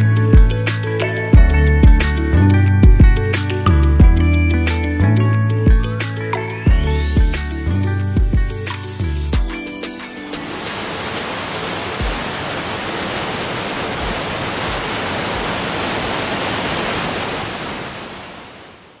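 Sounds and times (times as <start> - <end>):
waterfall rushing: 9.7 - 19.0.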